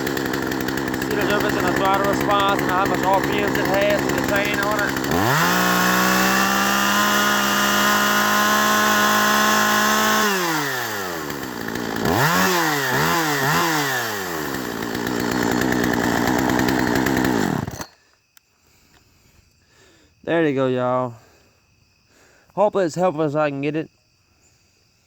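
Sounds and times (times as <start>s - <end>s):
chainsaw revving: 0.0s - 18.0s.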